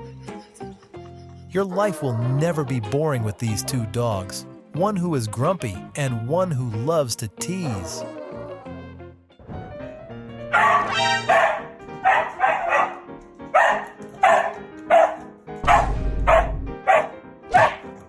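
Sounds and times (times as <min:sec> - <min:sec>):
background music: 0:00.0 - 0:18.0
dog barking: 0:10.5 - 0:18.0.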